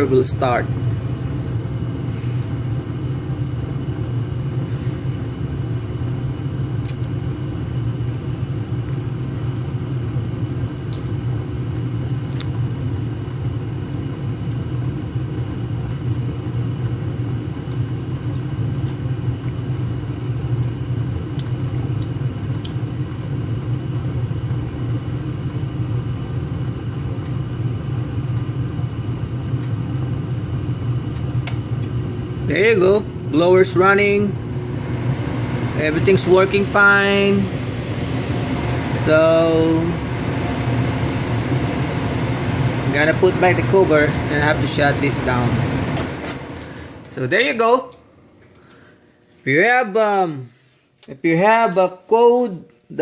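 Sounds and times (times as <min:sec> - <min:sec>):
gas furnace rumbling hum: 0:00.0 - 0:53.0.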